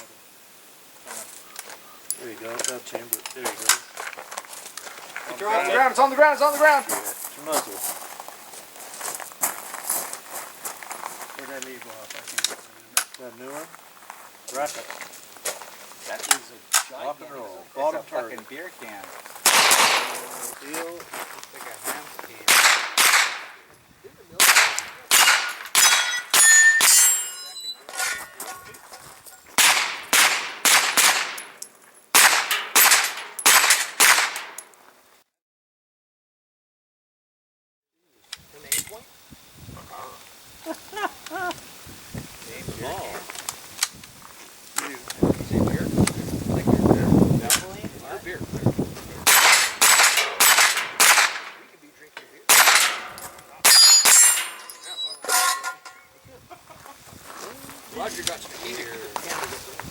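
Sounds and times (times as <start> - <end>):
carbine gunshots: 19.4 - 20.4, 22.4 - 23.6, 24.4 - 27.3, 29.6 - 34.7, 49.2 - 51.7, 52.5 - 54.8
bullets clanging on steel targets: 19.5 - 20.4, 22.4 - 23.6, 24.4 - 34.7, 49.3 - 51.6, 52.5 - 56.1.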